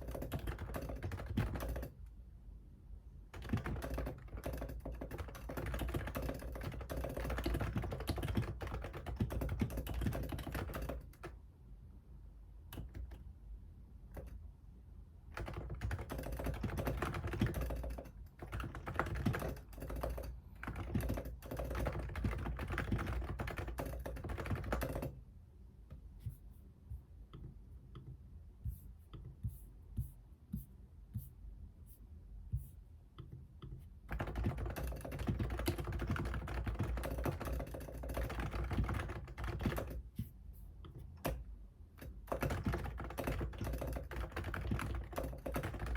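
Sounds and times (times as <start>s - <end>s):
typing on computer keyboard: 0.0s - 2.0s, 3.3s - 11.4s, 12.7s - 13.3s, 14.1s - 14.4s, 15.3s - 25.2s, 33.2s - 40.2s, 40.8s - 45.9s.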